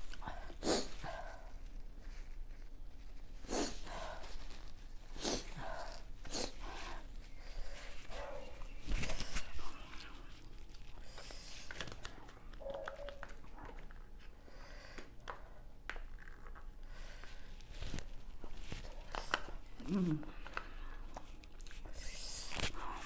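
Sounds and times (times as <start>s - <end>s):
person sniffing: 0.3s - 1.5s, 3.4s - 4.4s, 5.1s - 7.0s
person chewing: 18.9s - 21.9s.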